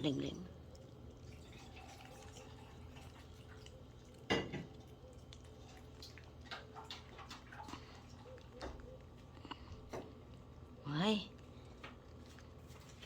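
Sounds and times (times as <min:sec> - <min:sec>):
treats clicking in a dish: 0:03.2 - 0:10.5.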